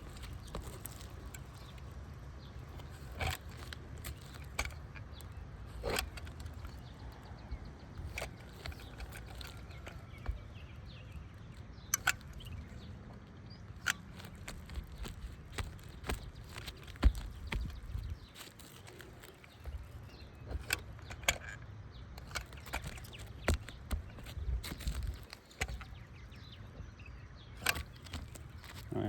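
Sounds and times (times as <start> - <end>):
knocks and scuffs on roof: 13.6 - 21.5.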